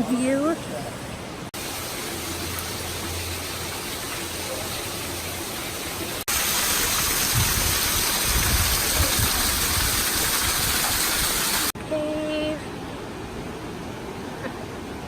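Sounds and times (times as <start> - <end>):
waterfall rushing: 1.2 - 11.8.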